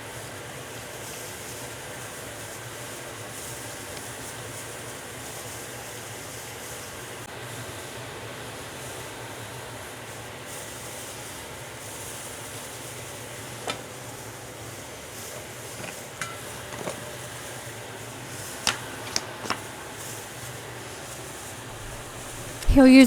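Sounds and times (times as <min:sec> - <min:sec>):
steady shop hiss: 0:00.0 - 0:23.0
spreader clicks and knocks: 0:13.6 - 0:13.9, 0:15.7 - 0:17.2, 0:18.4 - 0:19.7
metal spreader scraping filler: 0:15.4 - 0:17.2.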